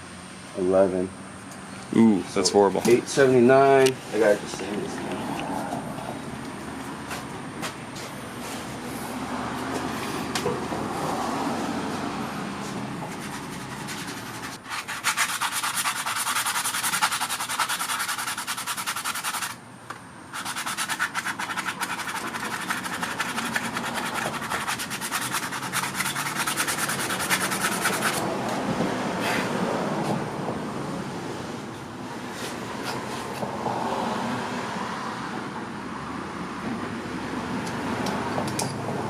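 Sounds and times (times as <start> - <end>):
fast rasping scrape: 13.1 - 19.6, 20.3 - 28.3.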